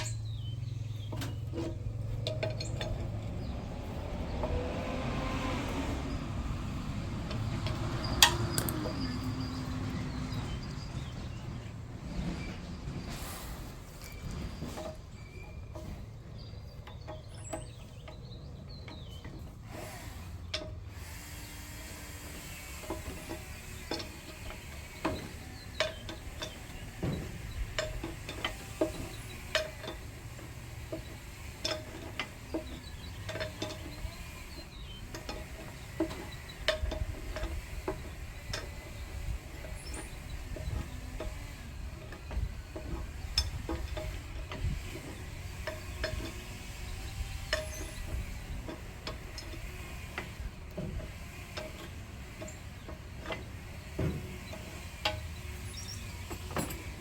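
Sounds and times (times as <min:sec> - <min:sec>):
hand tools clinking on metal: 0:00.0 - 0:11.7, 0:14.0 - 0:21.0, 0:22.3 - 0:57.0
low steady rumble: 0:00.0 - 0:19.5.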